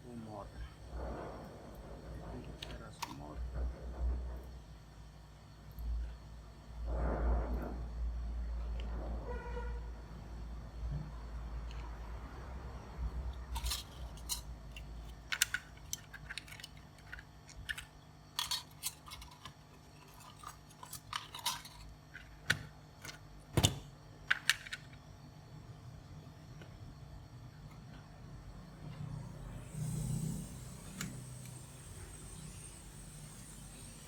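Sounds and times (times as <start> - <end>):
small tools clicking and tapping: 13.4 - 23.2.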